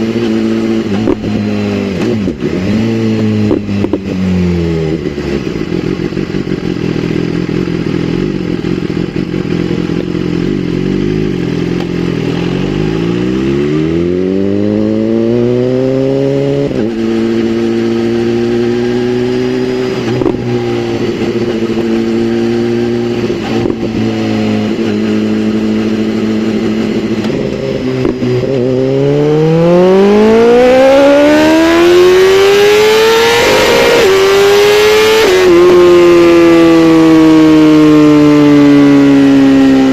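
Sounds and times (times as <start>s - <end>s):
motorcycle engine revving: 0.0s - 39.9s.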